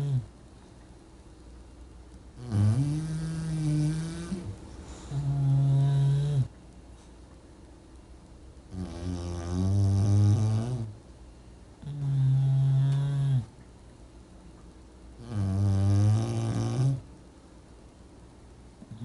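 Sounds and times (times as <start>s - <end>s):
dog snoring: 0.0s - 0.3s, 2.4s - 6.5s, 8.7s - 11.0s, 11.8s - 13.5s, 15.2s - 17.1s.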